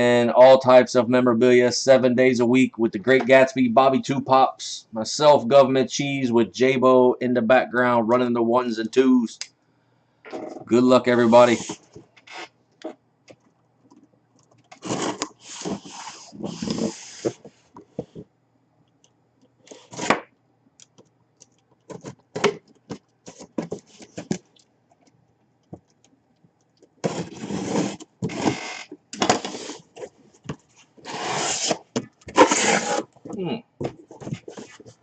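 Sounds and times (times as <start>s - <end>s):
packaging scraping and rustling: 14.7s - 17.4s, 27.0s - 28.5s, 31.0s - 33.2s.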